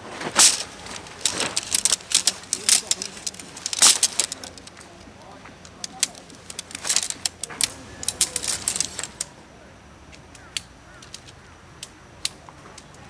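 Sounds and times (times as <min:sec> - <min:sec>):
sharp clicks and knocks: 0:00.2 - 0:09.3
faint bird calls: 0:10.3 - 0:12.1.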